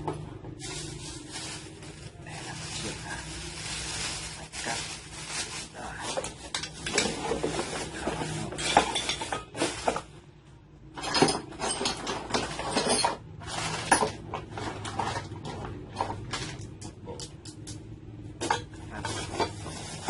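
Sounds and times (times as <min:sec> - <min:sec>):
metal parts clinking and rattling: 0:06.1 - 0:10.0, 0:10.9 - 0:17.4.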